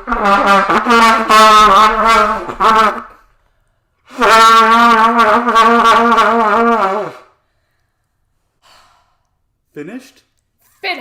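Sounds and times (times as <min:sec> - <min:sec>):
trumpet blown unmusically: 0:00.0 - 0:03.4, 0:04.1 - 0:07.4.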